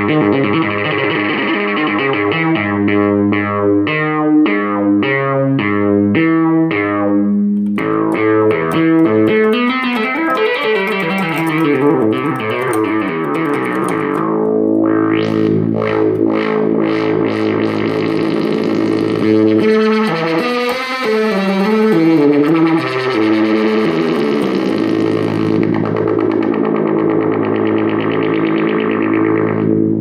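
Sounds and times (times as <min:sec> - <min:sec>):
synthesizer playing buzzy notes: 0:07.6 - 0:30.0.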